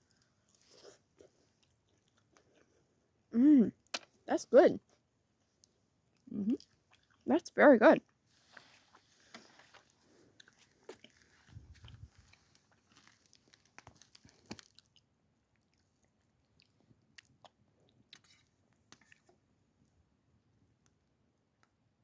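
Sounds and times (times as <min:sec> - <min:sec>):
person chewing food: 0:00.0 - 0:04.2, 0:04.9 - 0:07.3, 0:08.1 - 0:19.8
small crunches and clicks: 0:08.5 - 0:15.0.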